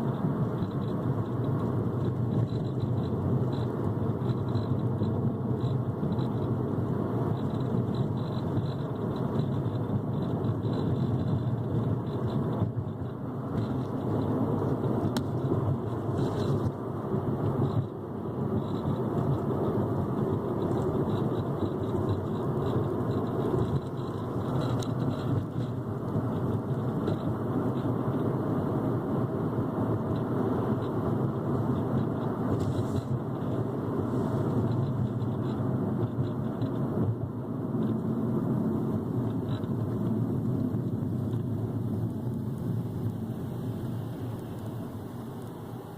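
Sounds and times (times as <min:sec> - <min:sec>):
car road and running noise: 0:00.0 - 0:45.9
fast faint rattle: 0:18.5 - 0:27.9.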